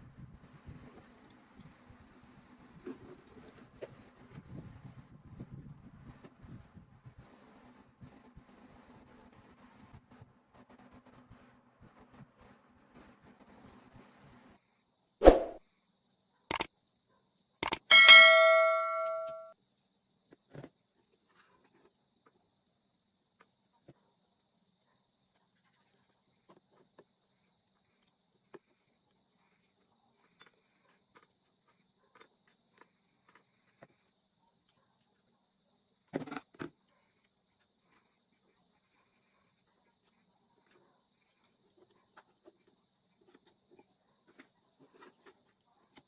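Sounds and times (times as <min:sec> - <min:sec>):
sharp clicks: 0:17.6 - 0:18.4
metal object ringing bell-like: 0:17.9 - 0:19.5.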